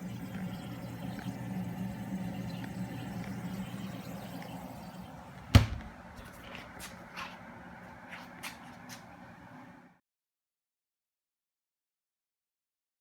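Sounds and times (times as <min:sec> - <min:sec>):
fridge compressor humming: 0:00.0 - 0:09.9.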